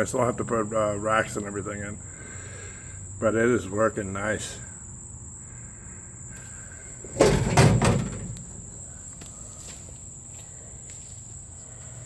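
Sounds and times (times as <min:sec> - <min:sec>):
crickets trilling: 0:00.0 - 0:12.0
metal drawer banging shut: 0:07.0 - 0:08.6.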